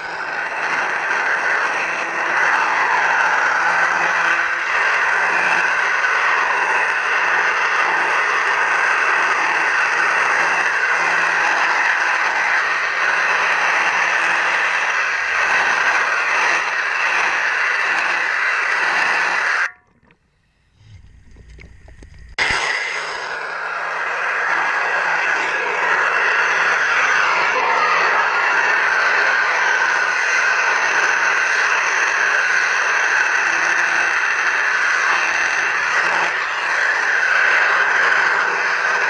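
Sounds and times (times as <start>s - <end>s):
propeller scraping underwater: 0.0s - 30.7s
faint low hum: 19.7s - 22.4s.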